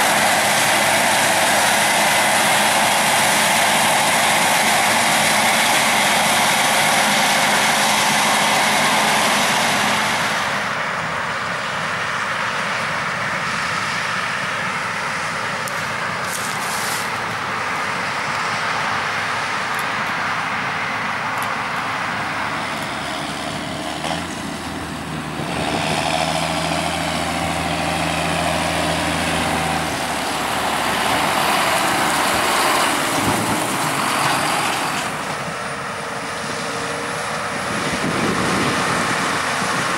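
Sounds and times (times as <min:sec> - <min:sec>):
diesel machinery running: 0:00.0 - 0:39.9
deep engine hum: 0:18.9 - 0:39.9.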